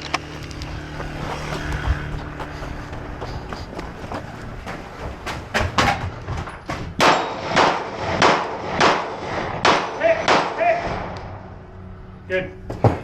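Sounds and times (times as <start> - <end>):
sharp loud knocks: 4.6 - 10.7.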